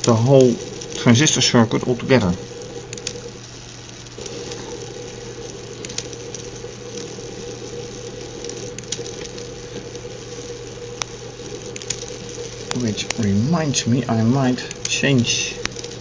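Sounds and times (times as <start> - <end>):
small electric motor whining: 0.0 - 16.0.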